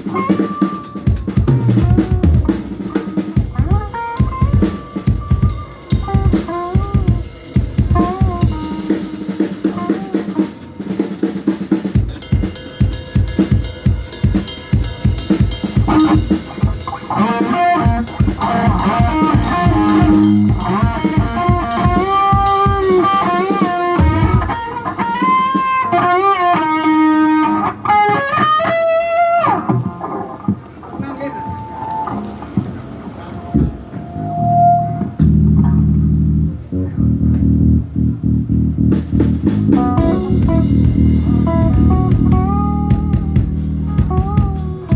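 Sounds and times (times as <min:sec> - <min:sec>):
drum kit beat: 0:00.0 - 0:31.0, 0:35.1 - 0:44.9
live rock band playing: 0:00.0 - 0:44.9
lead melody with pitch bends: 0:15.7 - 0:25.2, 0:33.3 - 0:44.9.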